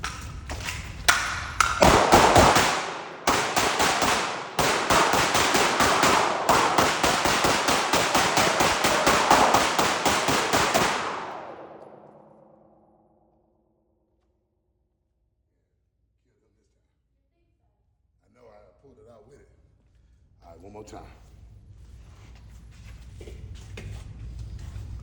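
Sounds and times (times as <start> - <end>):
rapid sharp cracking bangs: 1.1 - 12.6.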